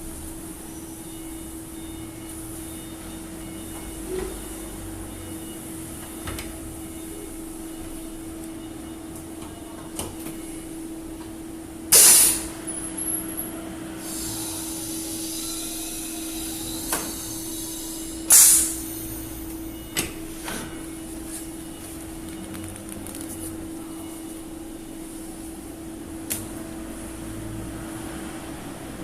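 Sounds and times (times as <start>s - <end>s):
pneumatic press air blasts: 11.9s - 12.6s, 14.0s - 19.2s.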